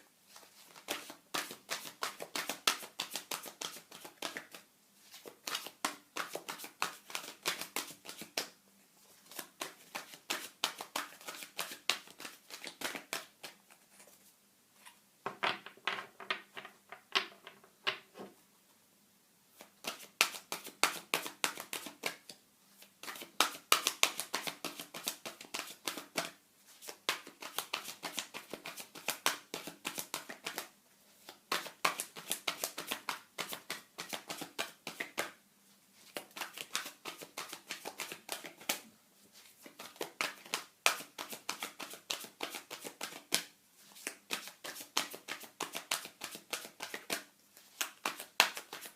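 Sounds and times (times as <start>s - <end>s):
cards being shuffled: 0.4s - 8.4s, 9.3s - 14.1s, 36.1s - 38.8s, 39.6s - 48.9s.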